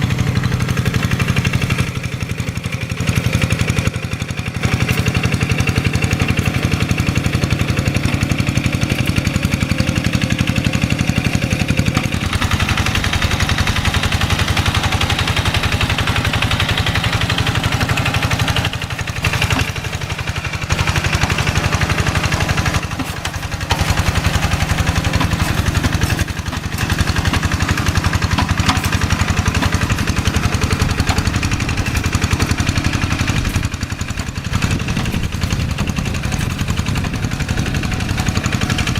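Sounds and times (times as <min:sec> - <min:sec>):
diesel engine chugging: 0:00.0 - 0:38.9.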